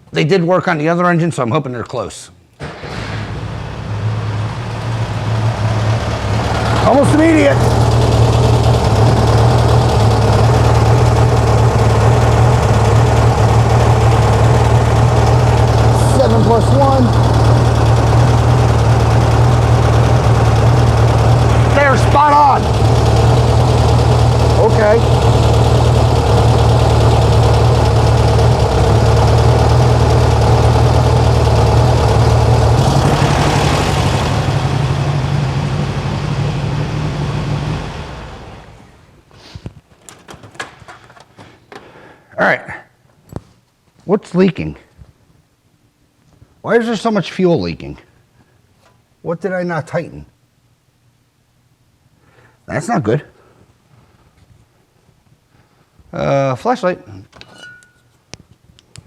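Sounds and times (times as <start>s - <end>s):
car engine idling: 2.7s - 39.2s.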